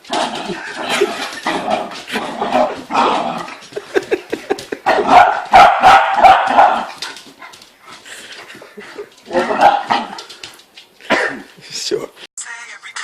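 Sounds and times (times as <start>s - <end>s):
dog barking: 4.9s - 7.0s, 9.4s - 10.2s.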